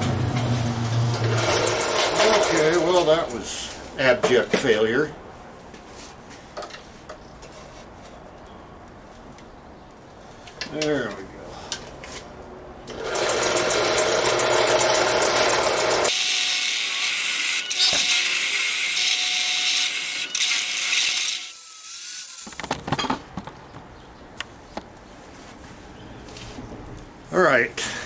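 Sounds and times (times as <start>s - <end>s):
power drill grinding through steel: 12.9s - 22.8s.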